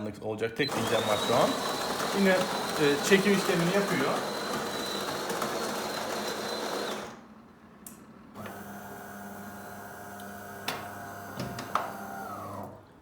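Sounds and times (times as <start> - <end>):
coffee grinder grinding: 0.7 - 7.2.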